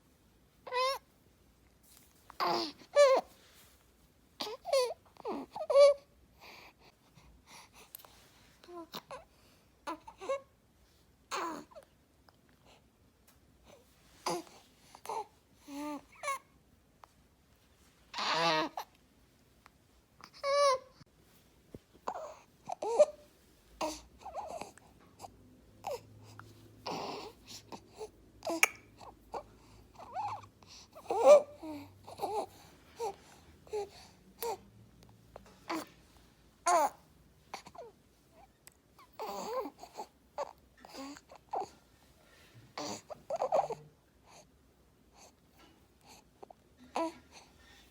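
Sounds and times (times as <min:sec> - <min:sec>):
infant squeaky fussy vocal sounds: 0:00.7 - 0:01.0, 0:02.4 - 0:03.3, 0:04.4 - 0:06.1, 0:11.3 - 0:11.8, 0:18.2 - 0:18.9, 0:20.2 - 0:21.0, 0:22.1 - 0:23.2, 0:26.9 - 0:34.6, 0:37.6 - 0:41.7, 0:42.8 - 0:43.8
infant noisy breathing: 0:23.8 - 0:28.2, 0:29.0 - 0:34.7, 0:45.1 - 0:47.9.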